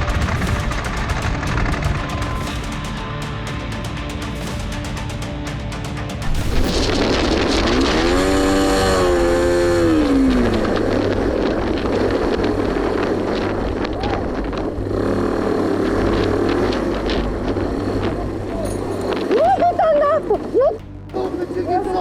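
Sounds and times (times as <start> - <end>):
road and wind rumble: 6.2 - 21.0
motorcycle engine revving: 6.2 - 21.2.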